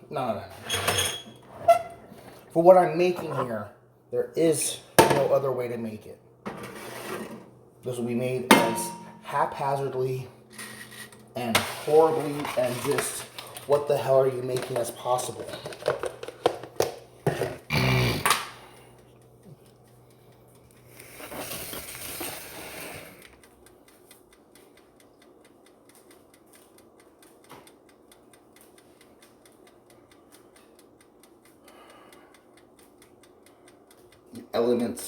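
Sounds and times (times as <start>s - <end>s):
cookware clattering and knocking: 8.5s - 9.2s
faint fast ticking: 23.4s - 35.0s.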